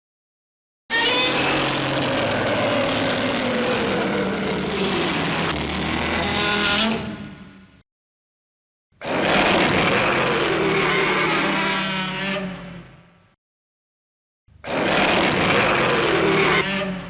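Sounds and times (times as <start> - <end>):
monster roar: 0.9 - 7.2, 9.0 - 12.4, 14.6 - 17.0.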